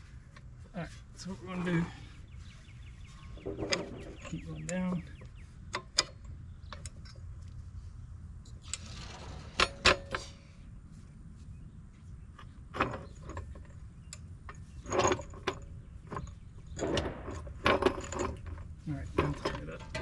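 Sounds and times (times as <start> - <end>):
steady low hum: 0.0 - 20.0
metal tools clicking and rattling: 3.2 - 7.2, 12.4 - 20.0.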